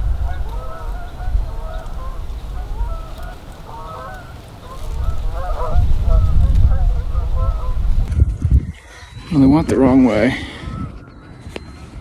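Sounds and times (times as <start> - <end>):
geese honking: 0.0 - 8.1
steady low rumble: 0.0 - 8.8.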